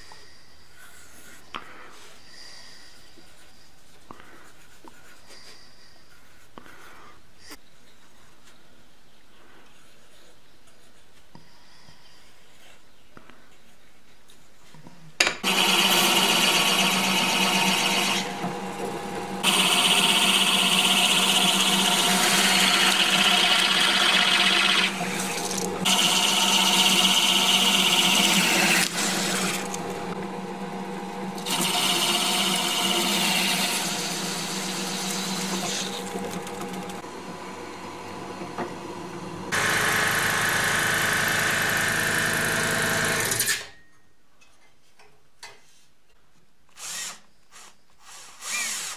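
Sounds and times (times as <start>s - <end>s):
electric power tool humming: 15.4s - 37.1s, 39.5s - 43.4s.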